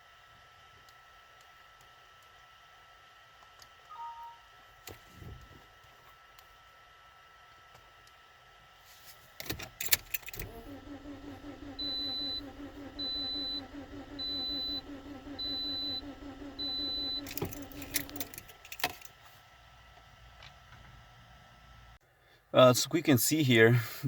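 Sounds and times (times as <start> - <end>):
high electronic chime beeping: 3.9 - 4.4
car engine cranking without firing: 9.5 - 19.1.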